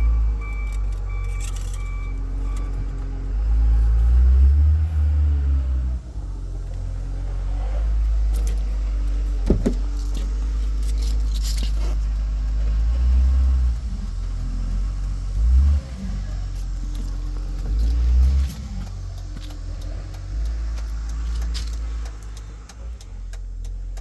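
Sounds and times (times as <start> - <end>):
car engine rumbling: 0.0 - 24.0
light clicks and rattles: 6.6 - 24.0.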